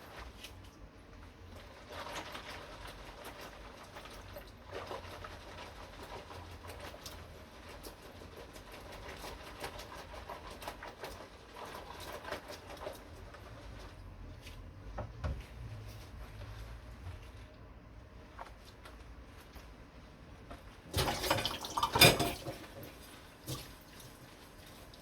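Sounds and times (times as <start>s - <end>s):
scrubbing: 0.0s - 25.0s
dishes clinking: 21.2s - 22.8s.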